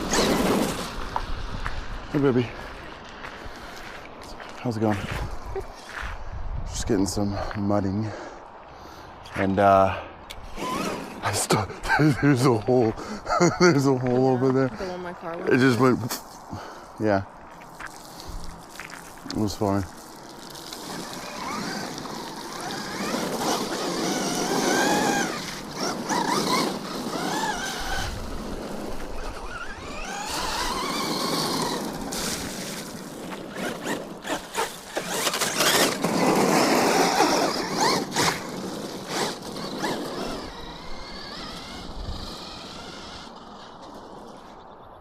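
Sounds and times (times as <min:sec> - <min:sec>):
rc car motor whining: 0:00.0 - 0:01.2, 0:10.4 - 0:11.4, 0:20.5 - 0:45.0
tyres spinning in mud: 0:00.0 - 0:01.3, 0:17.7 - 0:44.7.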